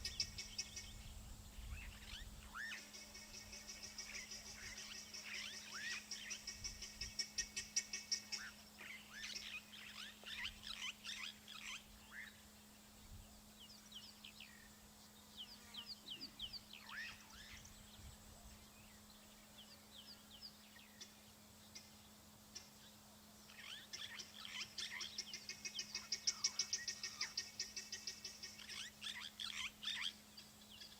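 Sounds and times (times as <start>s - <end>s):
guineafowl alarm calls: 1.7s - 12.5s, 23.5s - 30.2s.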